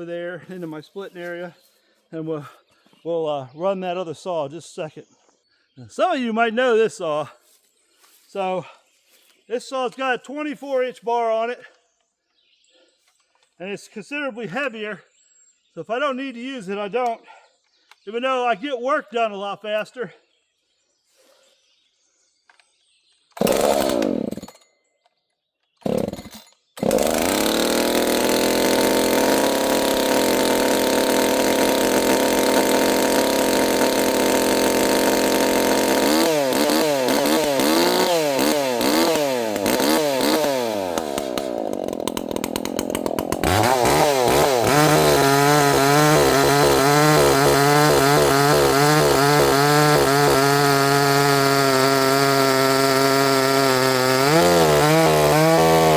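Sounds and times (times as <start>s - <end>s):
chainsaw pull-start: 23.3s - 24.7s, 25.7s - 55.9s
chainsaw engine revving: 23.4s - 24.6s, 25.8s - 55.9s.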